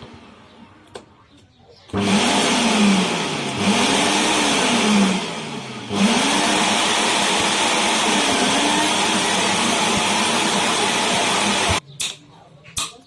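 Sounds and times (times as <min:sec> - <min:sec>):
vacuum cleaner motor running: 0:02.0 - 0:11.8.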